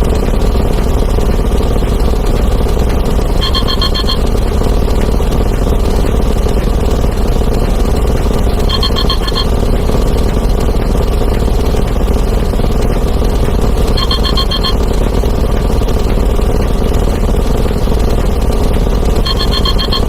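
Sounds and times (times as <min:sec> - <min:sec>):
steady rumble: 0:00.0 - 0:20.0
alarm clock beeps: 0:03.2 - 0:05.3, 0:08.4 - 0:09.9, 0:13.7 - 0:15.2, 0:19.1 - 0:20.0.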